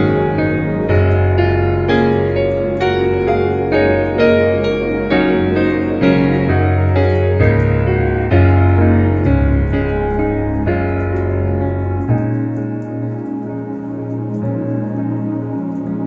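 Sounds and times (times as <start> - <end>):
faint fire crackle: 0.0 - 16.0
piano music: 0.0 - 16.0.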